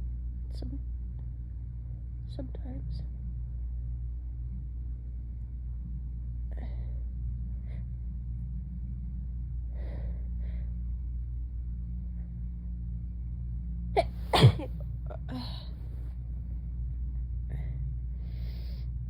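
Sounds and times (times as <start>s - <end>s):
steady low hum: 0.0s - 19.0s
woman sneezing: 14.0s - 15.6s.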